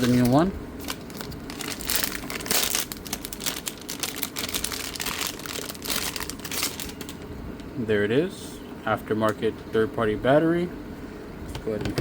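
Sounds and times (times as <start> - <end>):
packaging crinkling and rustling: 0.0 - 7.3.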